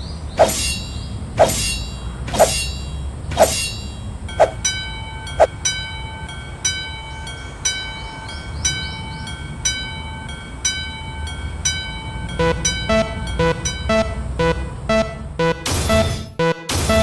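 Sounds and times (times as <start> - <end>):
low rumble of train: 0.0 - 14.3
level crossing bell ringing: 11.7 - 17.0.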